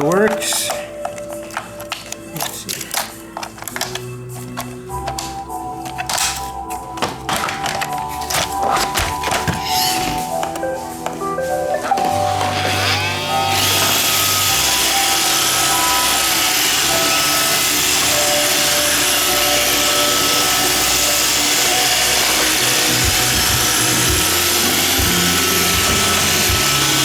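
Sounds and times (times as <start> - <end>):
robot vacuum whirring: 11.9 - 27.0.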